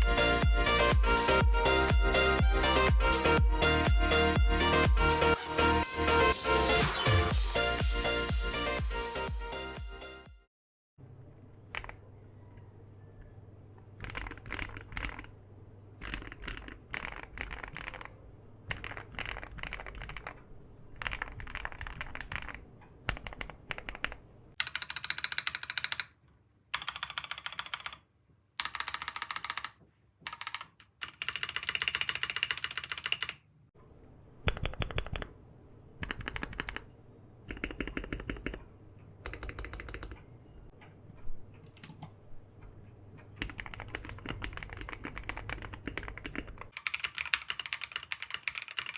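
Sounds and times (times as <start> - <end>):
mechanical keyboard typing: 11.6 - 12.1, 13.8 - 15.3, 16.0 - 28.0, 28.6 - 33.4, 34.4 - 35.3, 36.0 - 36.9, 37.5 - 40.3, 41.6 - 42.2, 43.2 - 48.9.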